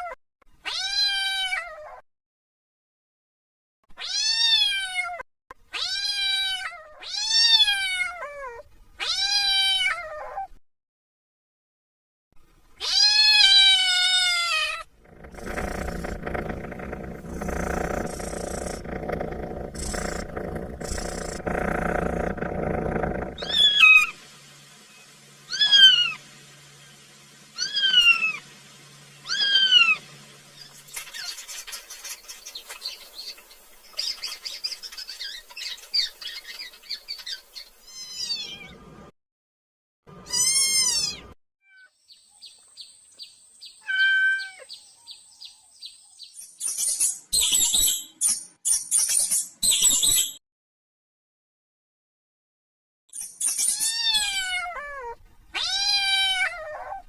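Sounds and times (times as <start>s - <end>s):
dense unclear noise: 15.0s - 25.5s
kitten meowing: 27.6s - 28.4s, 40.3s - 41.9s, 43.8s - 44.6s, 53.8s - 57.0s.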